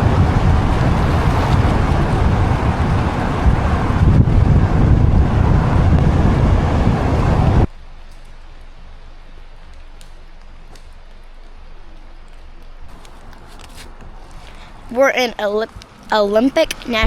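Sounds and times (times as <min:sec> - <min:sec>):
strong wind buffeting microphone: 0:00.0 - 0:07.7.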